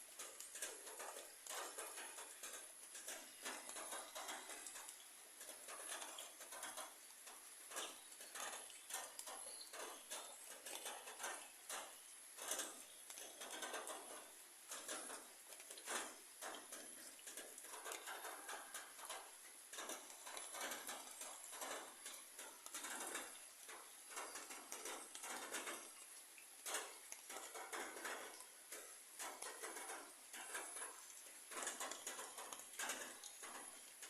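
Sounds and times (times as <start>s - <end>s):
rain pattering on leaves: 0.0s - 34.0s.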